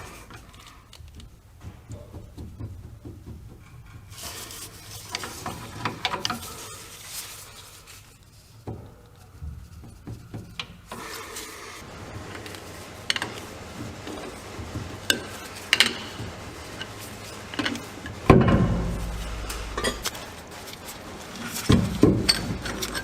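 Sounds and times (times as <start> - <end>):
metallic clinks and scrapes of tools: 21.5 - 23.0.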